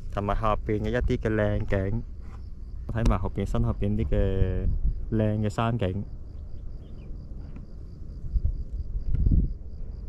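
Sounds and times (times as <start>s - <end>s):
insect chirping: 0.0s - 10.0s
low rumble: 6.0s - 10.0s.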